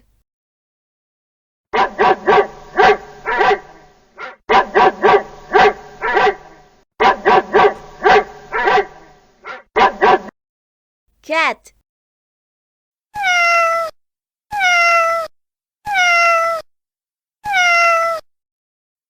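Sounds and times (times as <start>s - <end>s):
dog barking: 1.8s - 10.3s.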